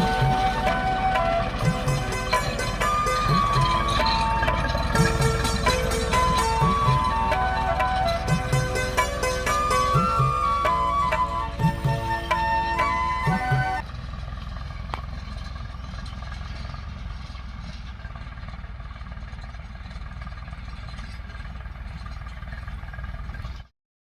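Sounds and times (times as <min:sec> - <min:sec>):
background music: 0:00.0 - 0:13.8
engine rumbling: 0:00.0 - 0:23.7.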